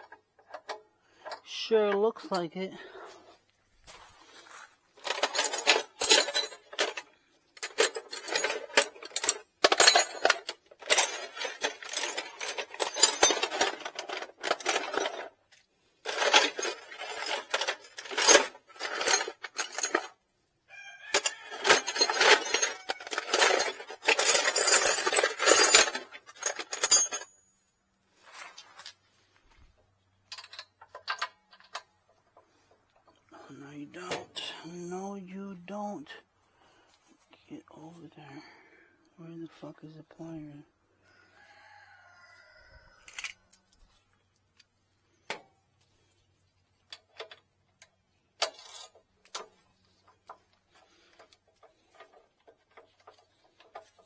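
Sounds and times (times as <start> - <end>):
metal hand tools clattering: 5.0 - 15.3, 16.1 - 20.1, 21.2 - 27.3.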